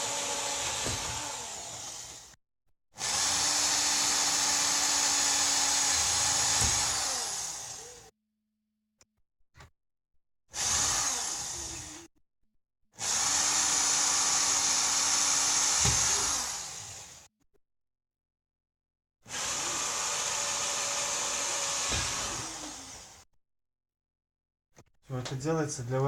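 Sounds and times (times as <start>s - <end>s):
power drill cutting plastic: 0.0s - 2.4s, 3.0s - 8.1s, 10.5s - 12.1s, 13.0s - 17.3s, 19.2s - 23.3s.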